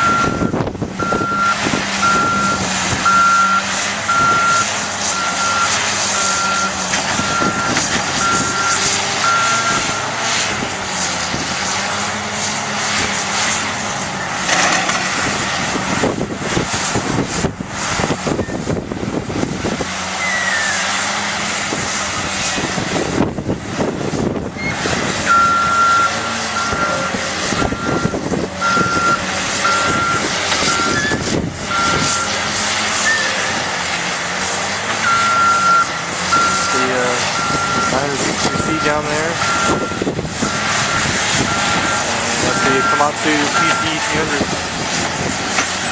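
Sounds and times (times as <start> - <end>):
backup alarm beeping: 0.0 - 10.1, 27.6 - 32.3, 35.0 - 36.8, 37.4 - 44.0
heavy diesel machinery running: 0.0 - 45.9.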